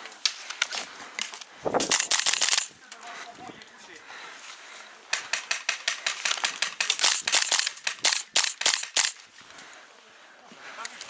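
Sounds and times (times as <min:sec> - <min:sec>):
airsoft gunfire: 0:01.8 - 0:02.7, 0:05.2 - 0:09.2.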